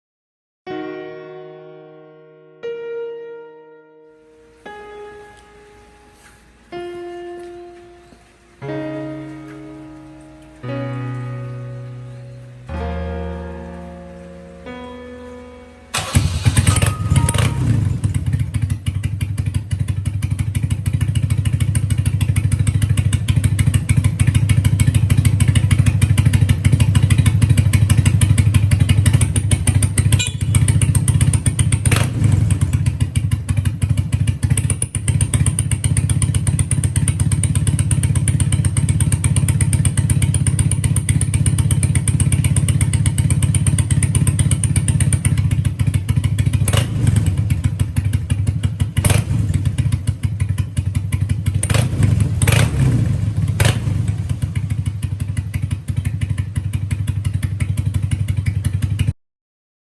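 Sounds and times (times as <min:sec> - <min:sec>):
motorcycle engine running: 0:15.9 - 0:59.2.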